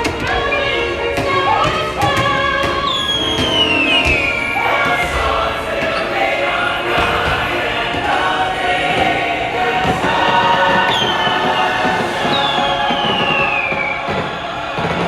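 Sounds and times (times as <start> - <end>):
upbeat music with chorus singing: 0.0 - 15.0
falling whistle-like glide: 12.2 - 15.0.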